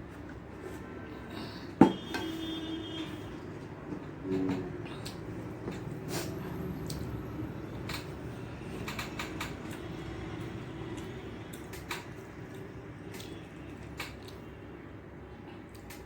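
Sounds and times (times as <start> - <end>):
chewing and mouth smacks: 10.9 - 14.6.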